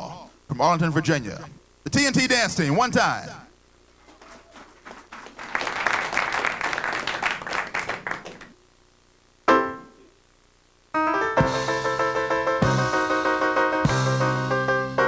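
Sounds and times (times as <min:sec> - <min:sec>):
audience applauding: 0:04.2 - 0:08.6
band playing loud chord: 0:11.0 - 0:15.0.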